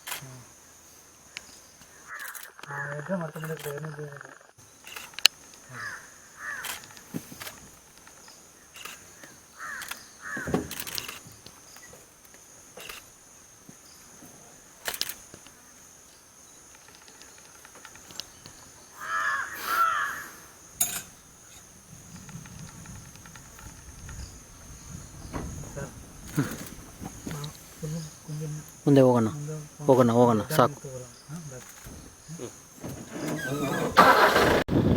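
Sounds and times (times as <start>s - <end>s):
high insect drone: 0.0s - 34.4s
sharp clicks: 1.3s - 2.7s, 6.6s - 10.1s, 10.7s - 13.1s, 14.8s - 15.6s
short animal calls: 5.6s - 6.9s, 19.0s - 20.4s.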